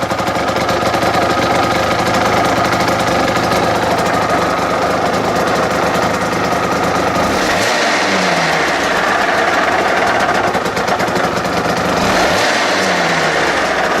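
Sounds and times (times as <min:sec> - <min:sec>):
two-stroke motorcycle engine idling: 0:00.0 - 0:14.0.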